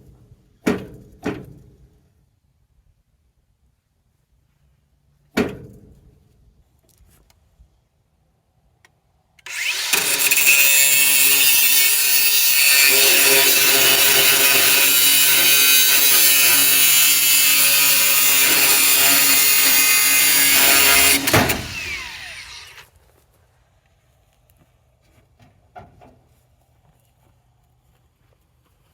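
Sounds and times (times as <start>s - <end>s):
angle grinder grinding steel: 9.4s - 22.8s.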